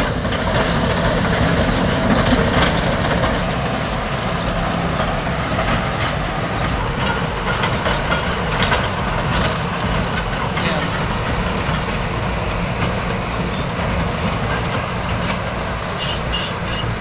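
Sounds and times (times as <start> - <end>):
diesel engines rumbling: 0.0 - 17.0.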